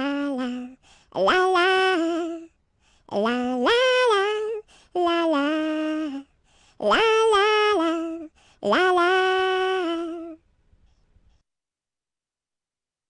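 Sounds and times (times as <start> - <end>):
person singing wordless tune: 0.0 - 10.4.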